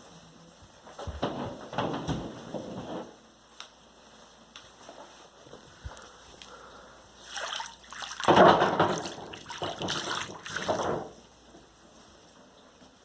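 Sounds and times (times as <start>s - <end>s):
water splashing and sloshing: 7.2s - 11.3s.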